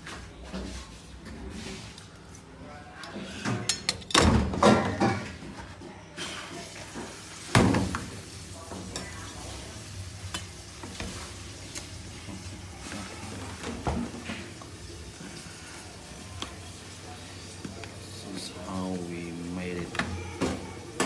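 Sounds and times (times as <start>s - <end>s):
cooking utensils knocking and scraping: 3.3s - 5.6s.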